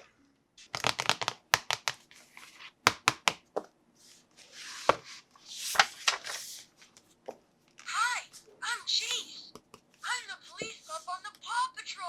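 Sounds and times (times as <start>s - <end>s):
plastic toys clicking and snapping: 0.6s - 2.1s.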